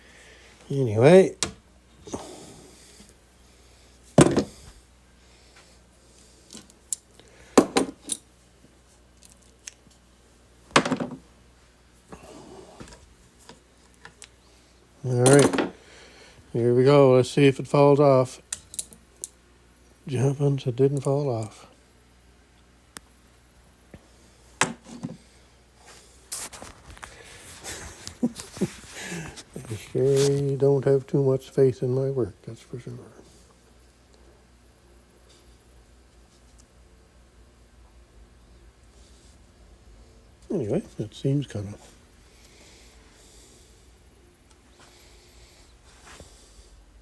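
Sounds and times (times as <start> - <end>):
furniture bumps and rustles: 4.2 - 4.6.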